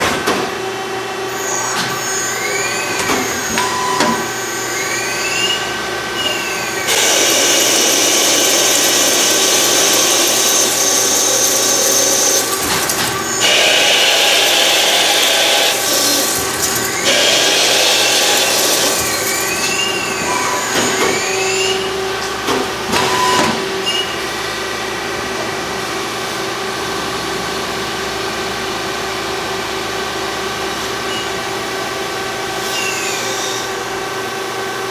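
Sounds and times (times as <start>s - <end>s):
machine tool whine: 1.0s - 22.4s
rushing metal cutting noise: 4.3s - 22.2s.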